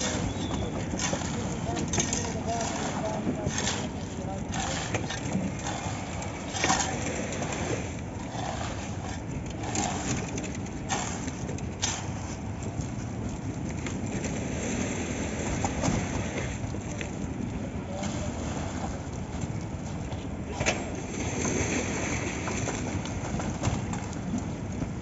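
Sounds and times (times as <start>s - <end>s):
knocks and scrapes: 0.0s - 13.1s
engine running steadily: 0.0s - 21.0s.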